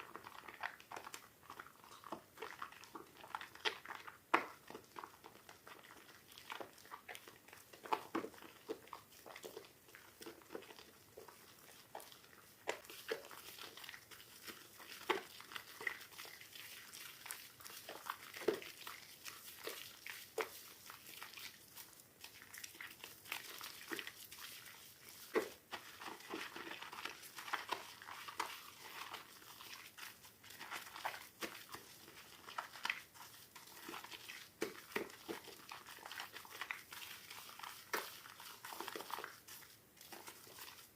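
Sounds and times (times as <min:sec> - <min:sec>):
wet soap squished by hand: 0:00.0 - 0:40.9.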